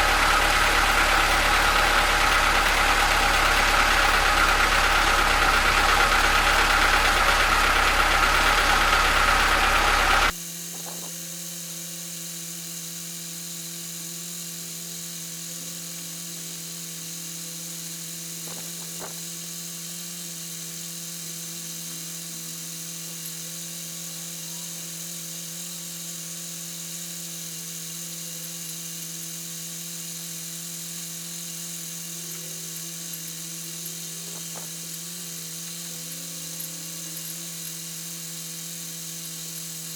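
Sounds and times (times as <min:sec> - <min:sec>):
steady low hum: 0:00.0 - 0:11.2
air compressor running: 0:00.0 - 0:39.9.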